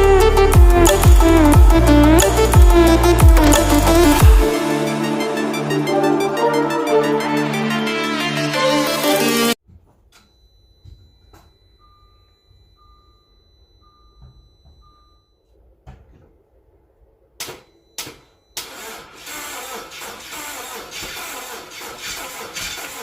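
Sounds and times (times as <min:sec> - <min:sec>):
car engine cranking: 0:00.3 - 0:04.5, 0:18.6 - 0:23.0.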